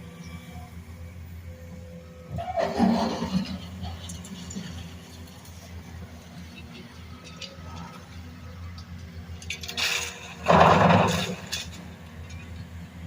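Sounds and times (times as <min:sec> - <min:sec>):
debris crashing: 0:09.5 - 0:11.9.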